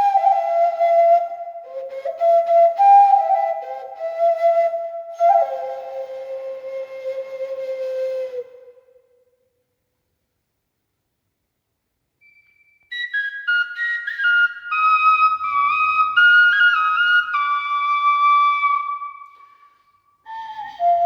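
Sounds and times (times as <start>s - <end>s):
clay whistle notes: 12.2s - 21.0s.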